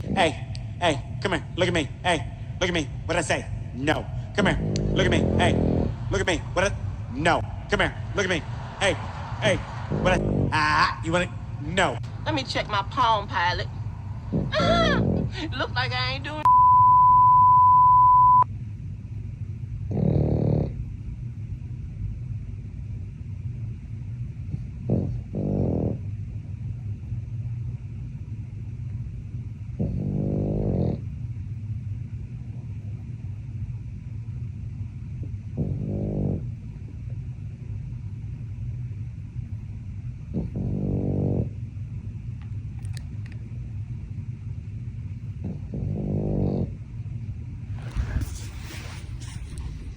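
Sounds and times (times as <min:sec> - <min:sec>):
dog snoring: 0:00.0 - 0:12.0, 0:14.3 - 0:15.7, 0:19.8 - 0:21.0, 0:24.4 - 0:26.4, 0:29.7 - 0:31.2, 0:35.1 - 0:37.3, 0:40.2 - 0:41.7, 0:45.2 - 0:49.9
low rumble of breathing: 0:00.0 - 0:16.5, 0:18.5 - 0:49.9.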